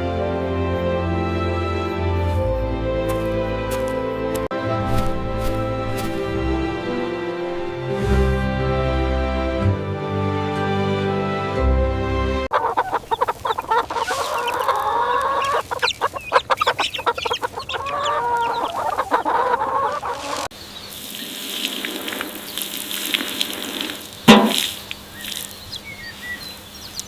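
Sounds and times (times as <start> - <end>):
soft background music: 0.0 - 12.2
chickens clucking: 12.5 - 20.5
birds chirping: 12.5 - 27.0.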